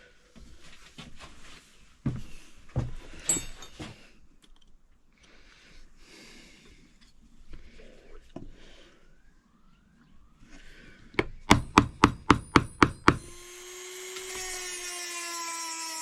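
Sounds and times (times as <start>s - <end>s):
hammer striking metal punch: 11.2s - 13.3s.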